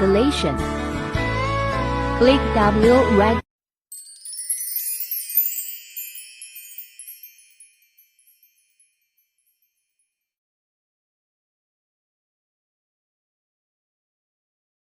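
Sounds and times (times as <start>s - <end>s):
tinkling chime tones: 3.9s - 10.2s.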